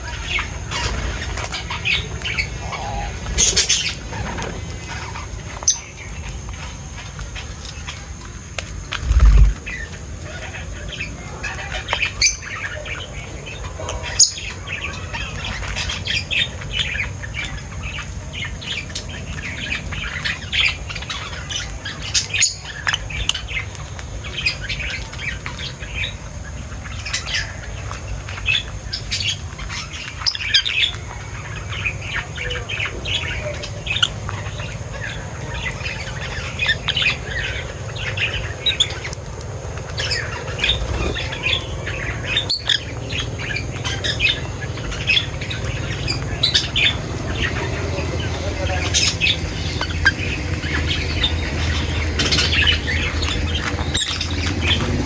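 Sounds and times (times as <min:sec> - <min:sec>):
steady low hum: 0:00.0 - 0:13.8
small birds chirping: 0:00.0 - 0:55.0.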